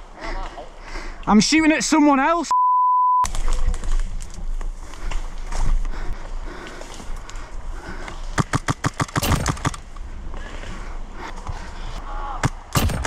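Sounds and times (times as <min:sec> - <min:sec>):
airsoft gun shots: 0:08.4 - 0:09.8, 0:12.4 - 0:13.0.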